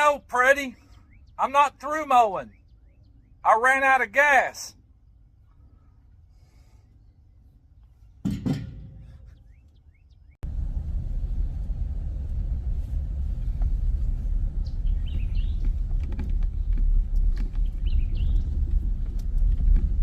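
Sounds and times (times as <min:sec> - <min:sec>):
bird chirps: 0:00.7 - 0:03.5, 0:09.0 - 0:10.4, 0:14.6 - 0:15.8, 0:17.6 - 0:18.6
loud thump: 0:08.2 - 0:09.2
steady low rumble: 0:10.4 - 0:20.0.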